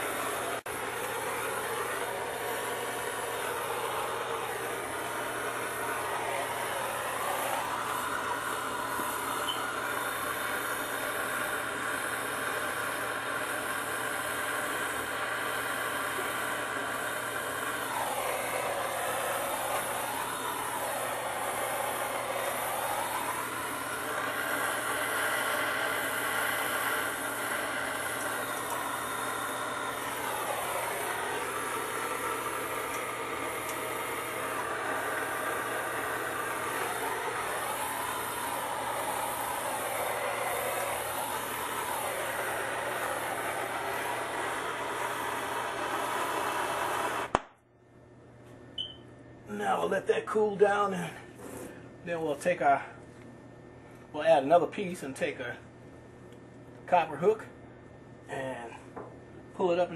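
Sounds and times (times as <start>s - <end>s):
torch flame hissing: 0.0s - 47.5s.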